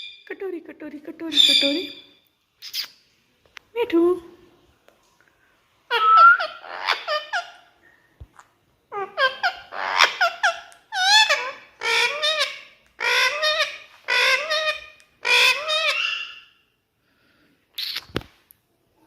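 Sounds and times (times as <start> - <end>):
parrot chattering mimicked talk: 8.9 - 16.4.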